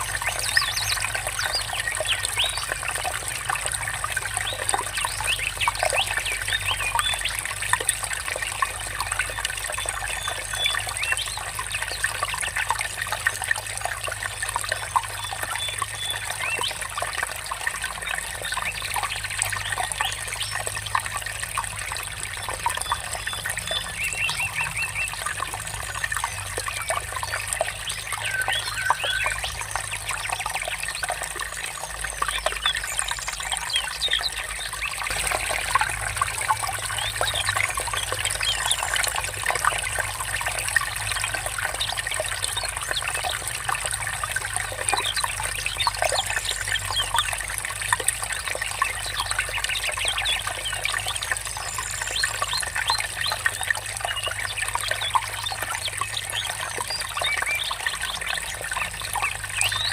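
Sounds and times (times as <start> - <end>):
stream water trickling: 0.0 - 59.9
birds calling: 22.6 - 40.6.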